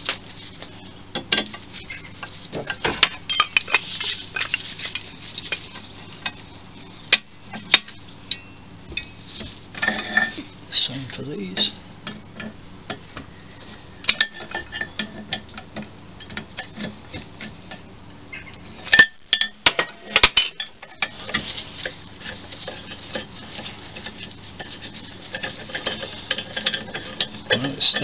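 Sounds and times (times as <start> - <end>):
metal scraping on metal: 9.7 - 11.8, 18.8 - 28.0.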